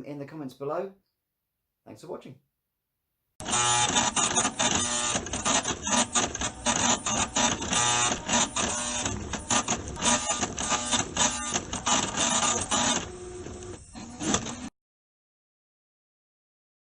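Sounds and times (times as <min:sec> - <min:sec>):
receipt printer chattering: 0:03.4 - 0:14.7.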